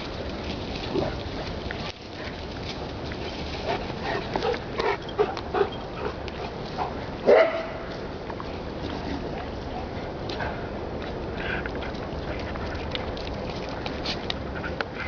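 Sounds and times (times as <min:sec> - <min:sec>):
dog barking: 0:07.2 - 0:07.8.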